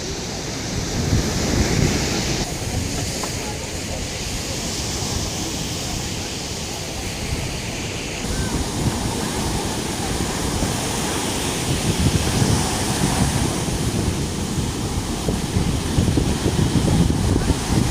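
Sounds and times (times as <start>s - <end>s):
heavy sea waves breaking: 0.0s - 17.9s
wind buffeting microphone: 0.0s - 17.9s.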